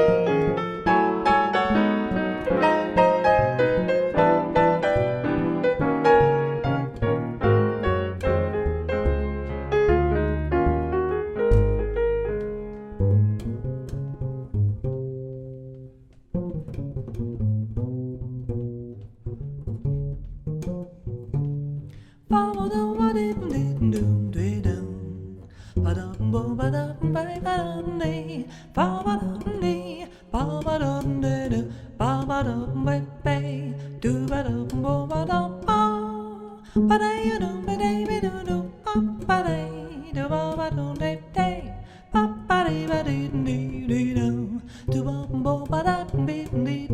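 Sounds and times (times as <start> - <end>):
piano chords: 0.0 - 16.0
double bass plucked: 0.0 - 46.9.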